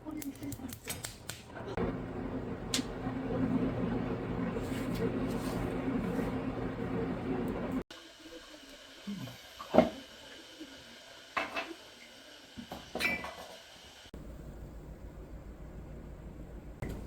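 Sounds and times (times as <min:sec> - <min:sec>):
steady low hum: 0:01.8 - 0:07.8.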